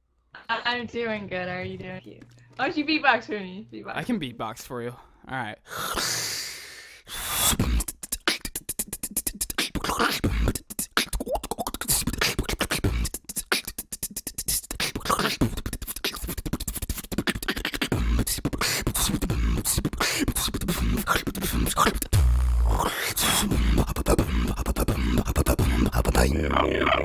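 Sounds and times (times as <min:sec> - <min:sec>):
mouth clicking percussion: 0:05.7 - 0:27.0
held deep bass tone: 0:22.1 - 0:26.6
deep bass kicks: 0:22.2 - 0:25.9.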